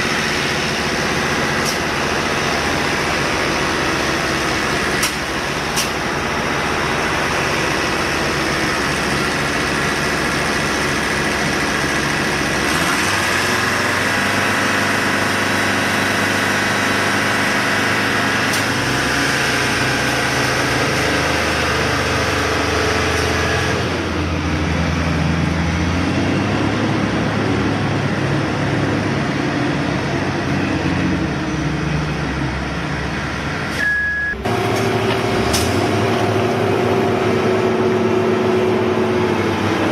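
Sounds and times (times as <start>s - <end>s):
heavy machinery engine running: 0.0s - 39.9s.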